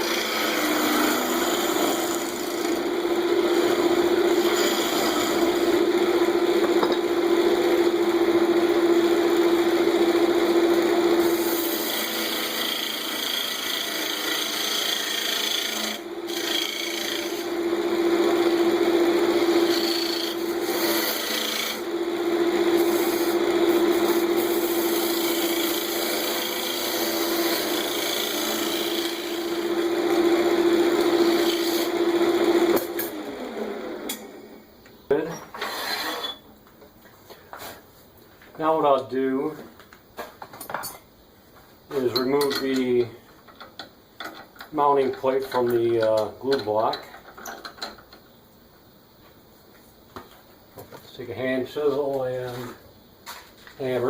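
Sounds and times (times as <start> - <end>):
tool scraping spinning wood: 0.0 - 34.3, 35.2 - 36.4
lathe motor humming: 14.8 - 34.5.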